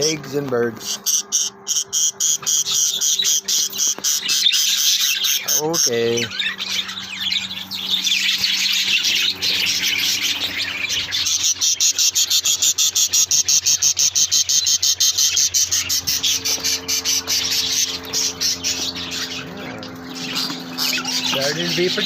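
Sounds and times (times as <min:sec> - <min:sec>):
low steady hum: 0:00.0 - 0:22.0
small birds chirping: 0:00.0 - 0:22.0.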